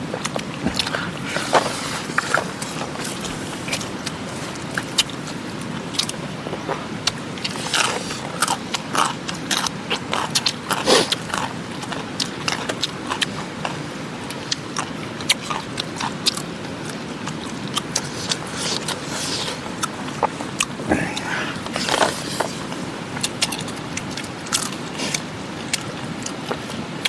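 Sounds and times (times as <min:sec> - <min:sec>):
person chewing crunchy food: 0:00.0 - 0:27.0.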